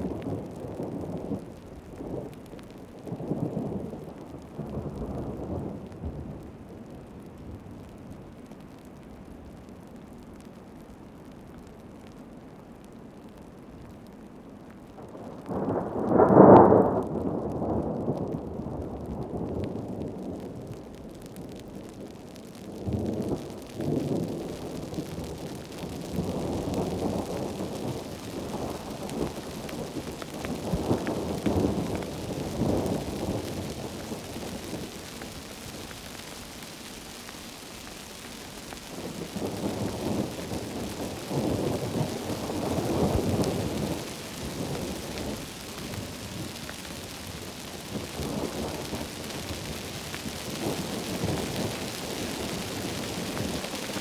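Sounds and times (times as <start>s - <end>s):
thunder rumbling: 15.0s - 20.8s, 22.6s - 36.4s, 37.8s - 54.0s
heavy rain hissing: 22.3s - 54.0s.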